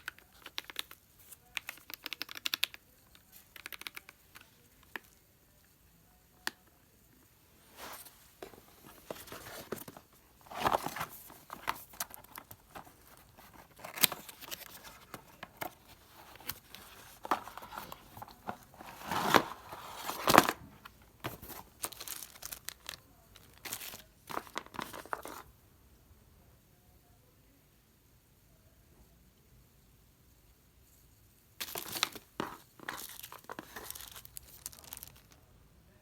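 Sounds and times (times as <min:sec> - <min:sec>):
packaging crinkling and rustling: 0:07.8 - 0:25.5, 0:31.6 - 0:35.4.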